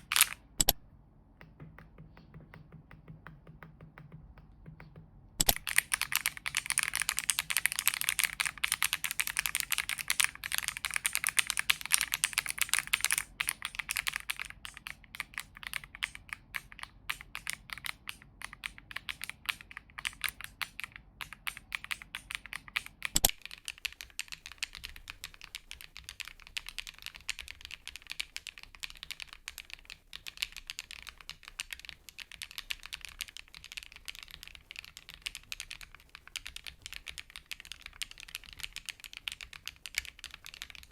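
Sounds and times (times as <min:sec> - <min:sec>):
typing on mechanical keyboard: 0:00.0 - 0:00.8, 0:01.4 - 0:40.9.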